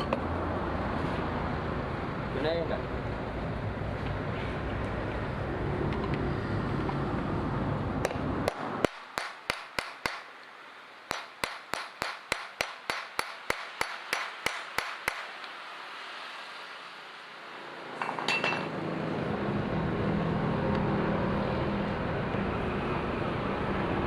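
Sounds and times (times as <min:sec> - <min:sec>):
hand tool tapping metal: 0:11.1 - 0:15.3.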